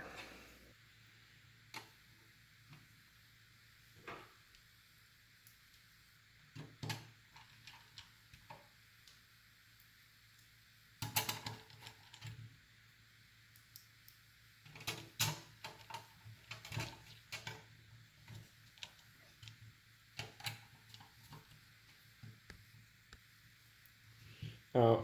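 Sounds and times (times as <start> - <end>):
metal parts clicking and tapping: 11.0 - 12.5, 14.6 - 19.6, 20.2 - 21.6.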